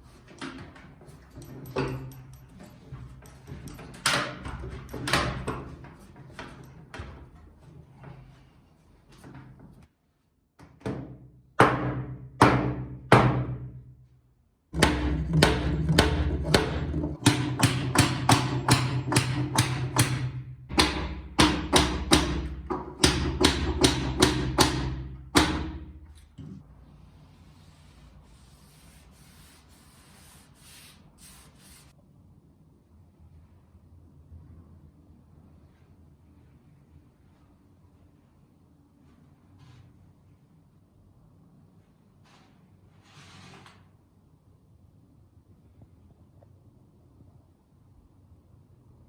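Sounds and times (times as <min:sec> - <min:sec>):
wooden mallet striking wood: 0:14.8 - 0:26.0.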